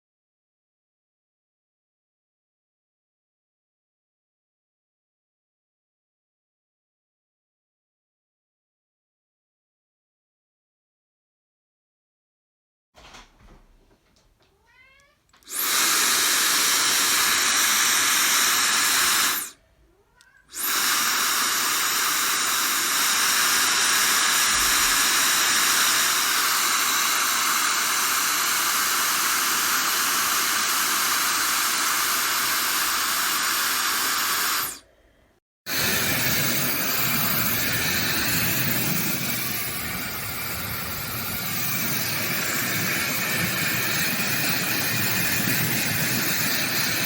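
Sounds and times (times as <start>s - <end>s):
hair dryer running: 15.4s - 19.5s, 20.5s - 34.8s, 35.7s - 47.0s.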